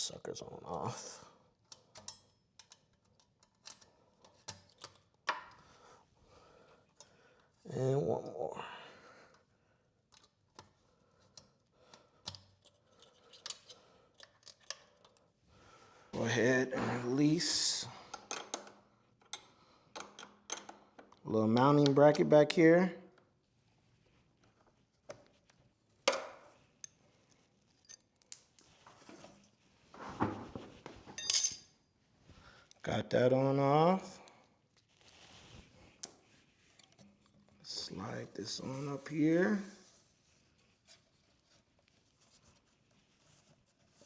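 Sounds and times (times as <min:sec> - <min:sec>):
metal tools clicking and knocking: 0:01.7 - 0:05.6, 0:18.1 - 0:21.2, 0:31.1 - 0:31.8
ringing metal clink: 0:31.2 - 0:31.8.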